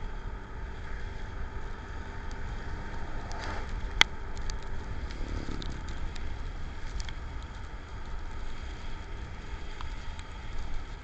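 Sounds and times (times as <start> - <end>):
wind rumble on microphone: 0.0 - 11.0
rain pattering: 2.1 - 11.0.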